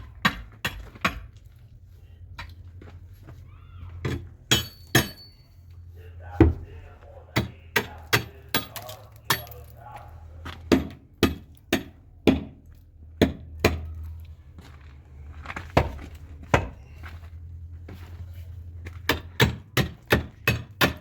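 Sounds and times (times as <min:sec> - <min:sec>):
steady low hum: 0:04.3 - 0:19.1.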